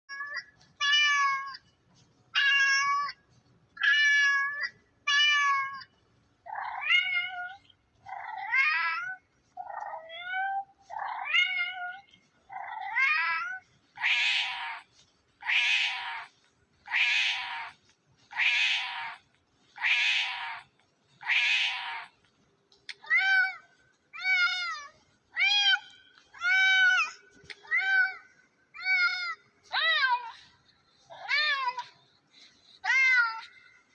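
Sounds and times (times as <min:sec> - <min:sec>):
cat meowing: 0:02.4 - 0:03.2, 0:06.5 - 0:22.2.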